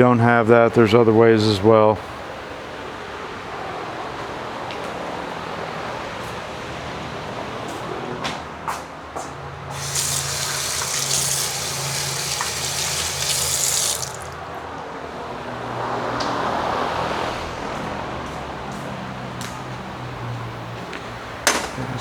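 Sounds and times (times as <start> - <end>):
spray can hissing: 9.7 - 14.4.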